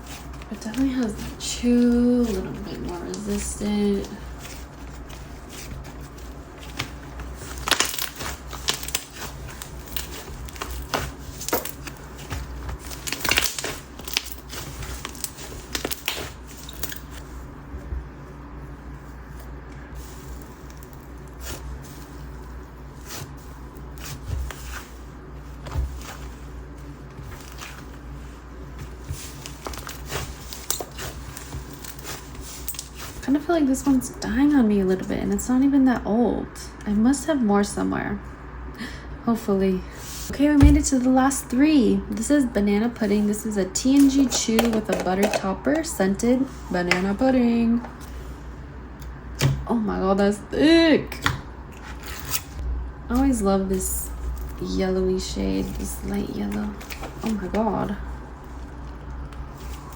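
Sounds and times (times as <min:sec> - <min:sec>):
slime crackling and popping: 0:06.6 - 0:17.2, 0:27.2 - 0:33.2.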